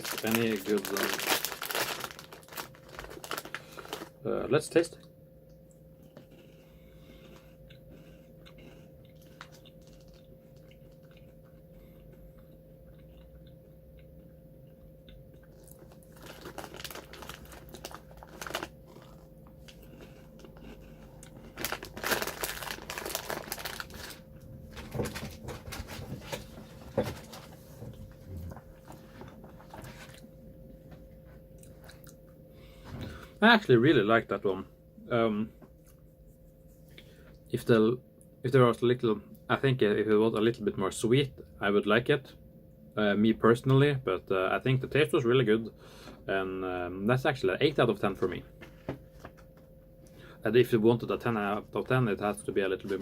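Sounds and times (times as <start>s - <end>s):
crunching and chewing snack: 0.0s - 4.2s, 6.0s - 30.3s
faint steady hum: 0.0s - 53.0s.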